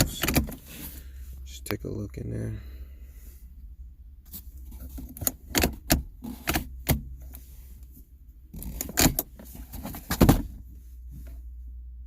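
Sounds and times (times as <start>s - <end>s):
plastic gear shifter clicking: 0.0s - 0.6s, 4.7s - 7.4s, 8.5s - 10.5s.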